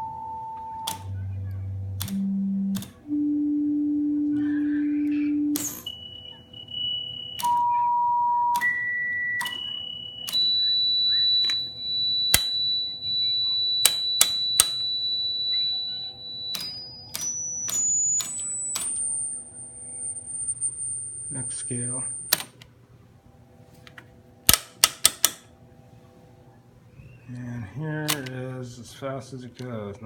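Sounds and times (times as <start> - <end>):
sine tone changing pitch: 0.0 - 22.4
button click: 0.8 - 3.0.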